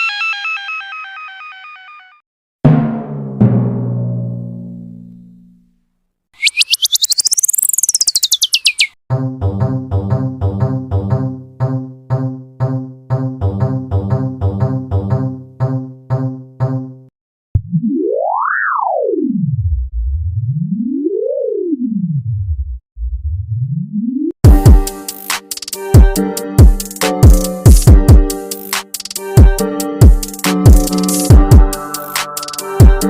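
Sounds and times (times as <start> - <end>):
sliding whistle tone: 6.4 - 9.0
bouncy keyboard tune: 24.4 - 33.0.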